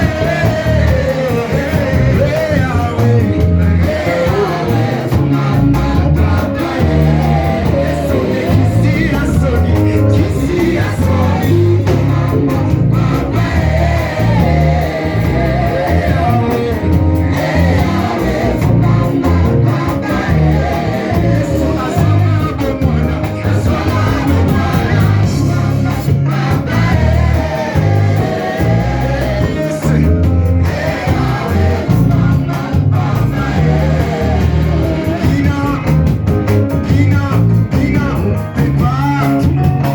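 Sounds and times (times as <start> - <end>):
band with pulsing bass: 0.0 - 39.9
gospel singing: 0.0 - 39.9.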